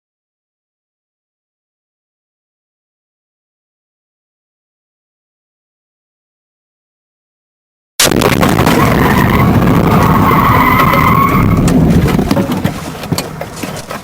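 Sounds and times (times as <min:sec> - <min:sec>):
vehicle crash: 0:08.0 - 0:14.0
tyres skidding and squealing: 0:08.2 - 0:14.0.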